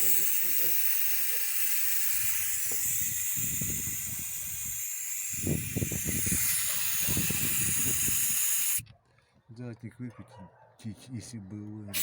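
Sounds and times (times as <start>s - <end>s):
refrigerant hissing: 0.0s - 8.8s.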